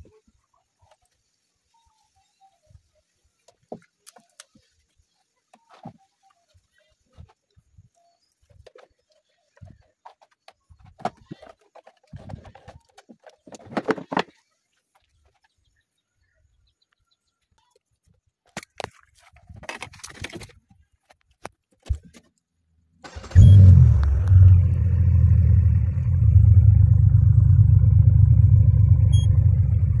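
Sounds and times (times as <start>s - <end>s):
car engine starting and running: 23.0s - 30.0s.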